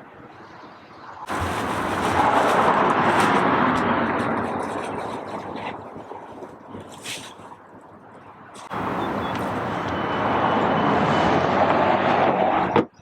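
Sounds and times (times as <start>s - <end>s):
vehicle passing close by: 8.7s - 12.8s.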